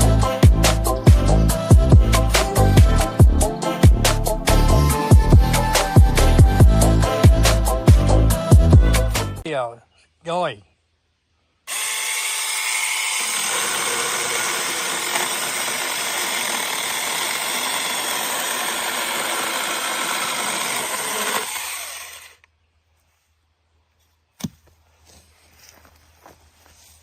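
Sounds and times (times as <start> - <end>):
mini chainsaw cutting wood: 11.7 - 22.5.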